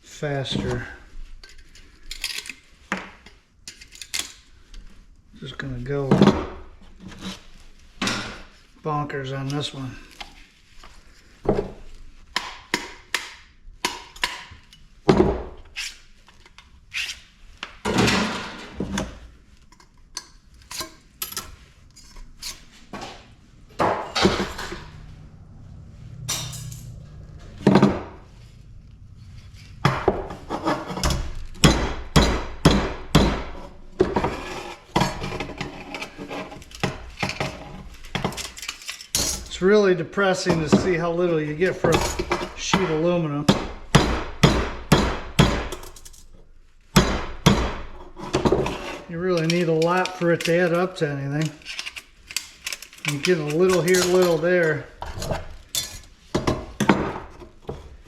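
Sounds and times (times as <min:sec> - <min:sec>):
hammer knocking on aluminum: 0:31.6 - 0:33.5, 0:43.5 - 0:45.7.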